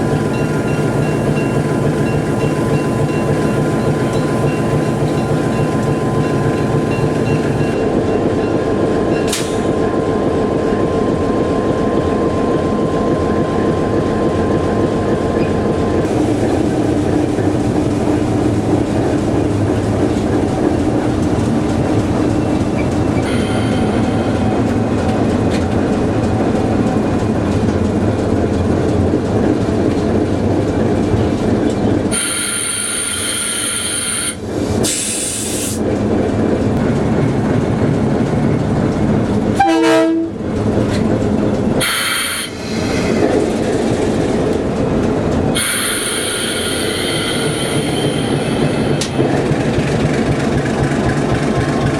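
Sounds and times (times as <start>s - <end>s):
diesel locomotive running: 0.0s - 51.9s
rumble of rail equipment: 0.0s - 51.9s.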